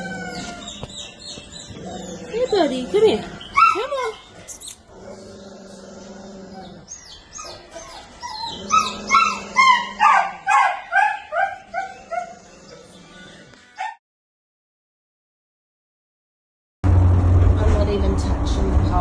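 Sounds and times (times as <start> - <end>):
dog yapping: 3.4 - 4.7, 7.0 - 12.4, 13.8 - 14.0.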